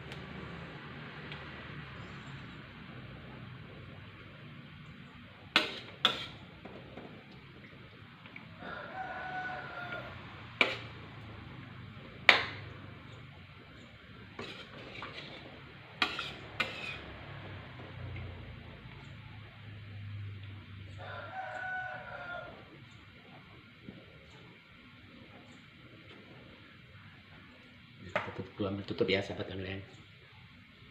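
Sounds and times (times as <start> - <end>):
metal spoon clanking on pot: 5.5 - 6.4, 10.6 - 11.0, 16.0 - 17.1
rooster crowing: 8.5 - 10.9, 20.9 - 22.8.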